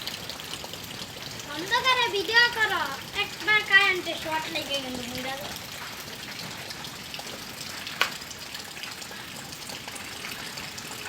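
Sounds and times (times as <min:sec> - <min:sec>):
drips ticking: 0:00.0 - 0:11.0
rain falling: 0:00.0 - 0:11.0.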